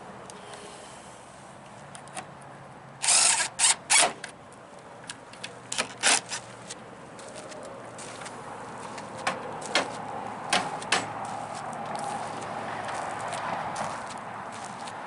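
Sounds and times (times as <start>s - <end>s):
short bursts of tool noise: 3.0s - 4.2s.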